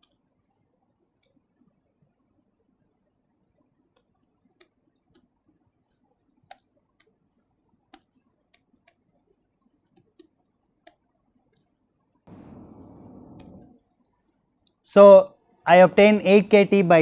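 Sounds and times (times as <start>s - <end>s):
pen tapping on tablet: 9.9s - 11.7s.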